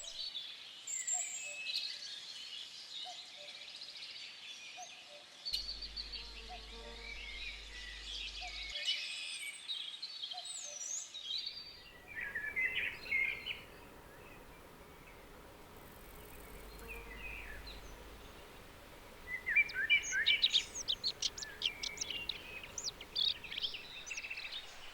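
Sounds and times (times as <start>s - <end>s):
songbirds chirping: 0.0s - 1.4s, 5.5s - 8.8s, 10.0s - 24.9s
faint outdoor hiss: 0.0s - 1.8s, 5.4s - 9.0s, 10.9s - 24.9s.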